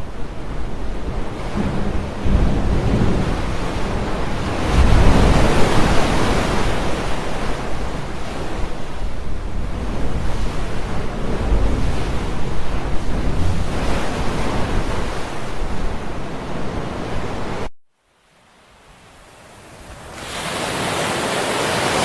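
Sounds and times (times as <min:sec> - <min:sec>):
water splashing in swells: 0:18.6 - 0:22.0.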